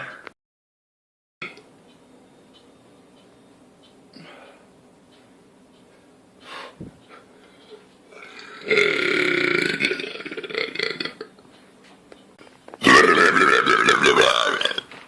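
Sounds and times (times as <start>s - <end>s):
man burping: 8.2s - 11.3s, 12.8s - 14.9s.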